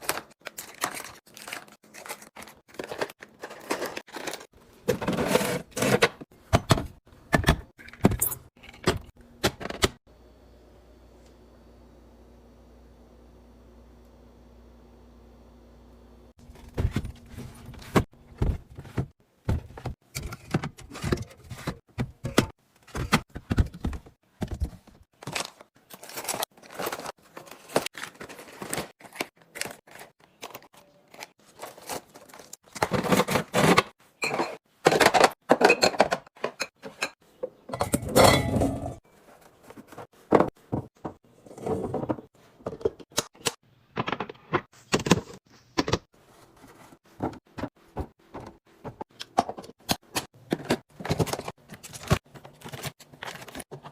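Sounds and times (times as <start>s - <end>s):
food containers knocking and clinking: 16.4s - 25.5s, 32.6s - 39.0s, 39.7s - 46.1s, 46.7s - 53.9s.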